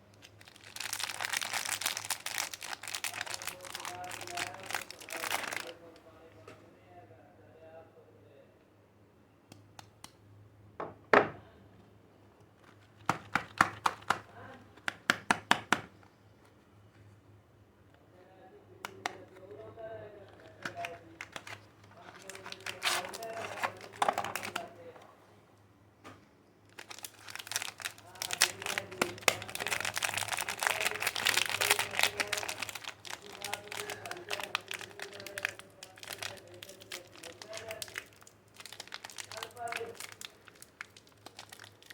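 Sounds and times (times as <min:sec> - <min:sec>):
wrappers crinkling: 0:00.0 - 0:06.0, 0:12.6 - 0:15.2, 0:20.2 - 0:24.9, 0:26.7 - 0:41.9
hands handling soap bar: 0:12.5 - 0:16.6, 0:18.8 - 0:25.1, 0:26.7 - 0:41.9.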